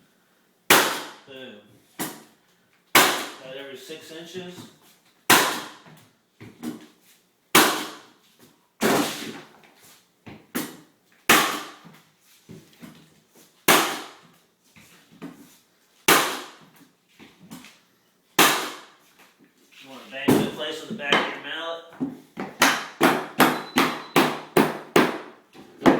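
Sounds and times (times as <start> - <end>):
mallet striking flooring nailer: 0.7 - 1.2, 3.0 - 3.4, 5.3 - 5.9, 7.6 - 8.1, 8.8 - 9.4, 11.3 - 11.9, 13.7 - 14.2, 16.1 - 16.6, 18.4 - 18.9, 22.6 - 25.9.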